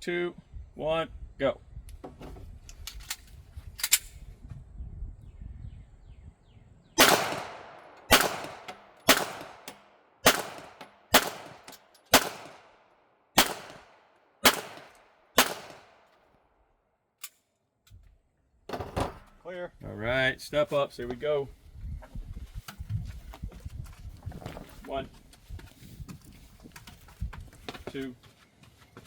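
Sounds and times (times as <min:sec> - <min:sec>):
pistol shots with ringing echo: 0:07.0 - 0:12.8, 0:13.4 - 0:16.0
handling noise and light clicks: 0:22.6 - 0:29.0.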